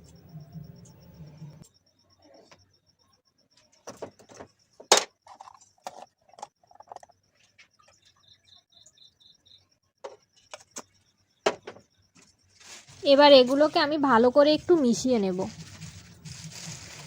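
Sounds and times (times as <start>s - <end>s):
soft scrapes: 15.4s - 17.0s.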